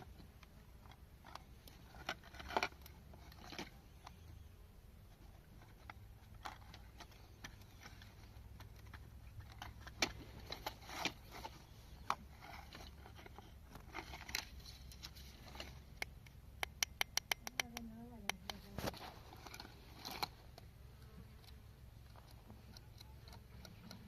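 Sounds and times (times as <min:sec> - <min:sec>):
metal parts clicking and scraping: 0:00.8 - 0:04.2, 0:05.5 - 0:15.9, 0:18.8 - 0:20.6.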